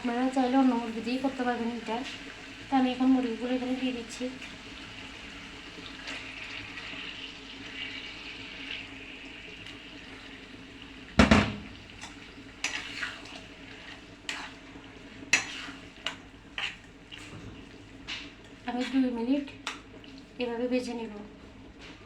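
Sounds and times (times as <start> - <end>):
chicken sizzling in a pan: 0.0 - 21.0
spatula knocking and scraping pan: 11.2 - 19.8.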